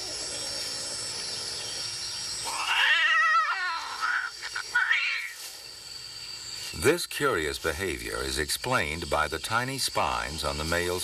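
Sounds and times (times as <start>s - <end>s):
cat yowling: 2.5s - 5.4s.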